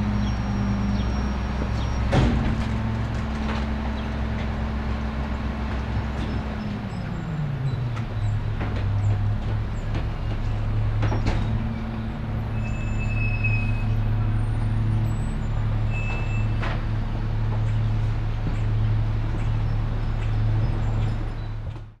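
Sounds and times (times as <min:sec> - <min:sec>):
garbage truck engine droning: 0:00.0 - 0:22.0
high squeaks: 0:11.1 - 0:16.7.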